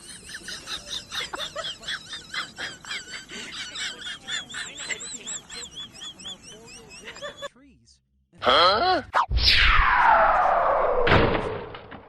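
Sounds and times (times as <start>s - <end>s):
birds chirping: 0.0s - 7.6s.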